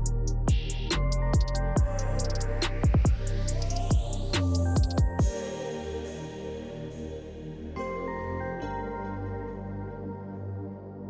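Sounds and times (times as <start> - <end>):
falling bass drops: 0.0 - 5.2
dubstep music: 0.0 - 10.0.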